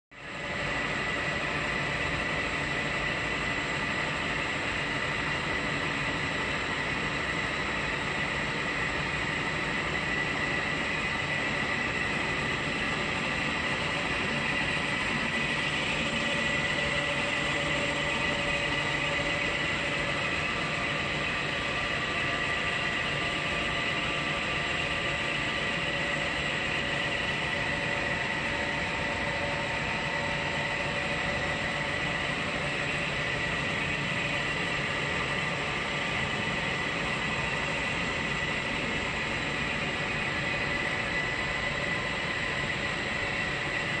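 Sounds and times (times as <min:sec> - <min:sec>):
machine high whine: 0:00.2 - 0:44.0
noisy hum: 0:00.2 - 0:44.0.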